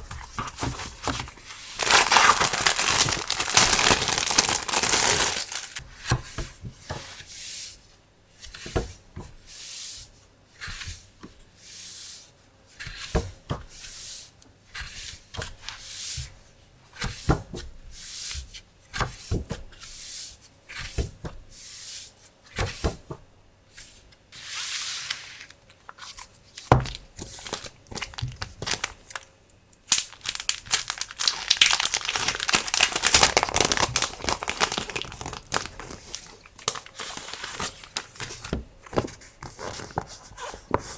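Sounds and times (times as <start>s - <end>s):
packaging rustling and crinkling: 0.0s - 5.8s, 25.0s - 29.3s, 29.9s - 40.9s.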